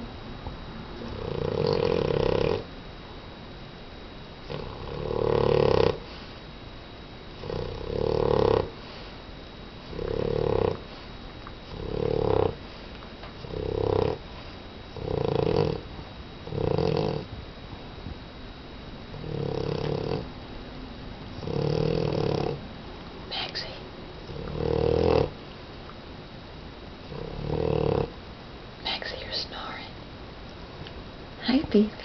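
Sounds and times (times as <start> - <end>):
dog snoring: 1.0 - 2.7, 4.4 - 6.4, 7.3 - 9.2, 9.8 - 17.3, 19.1 - 20.3, 21.3 - 22.6, 23.3 - 25.5, 27.0 - 28.2.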